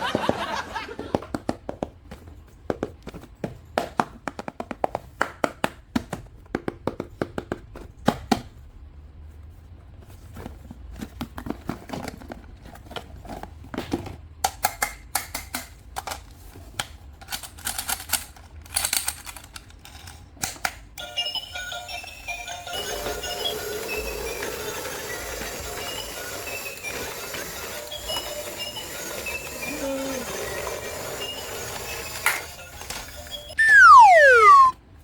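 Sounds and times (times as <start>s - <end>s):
plastic toy packaging clattering: 15.9s - 20.4s.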